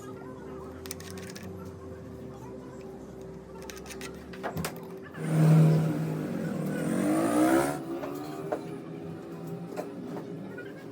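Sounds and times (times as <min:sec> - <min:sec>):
motorcycle engine revving: 0:05.2 - 0:10.1.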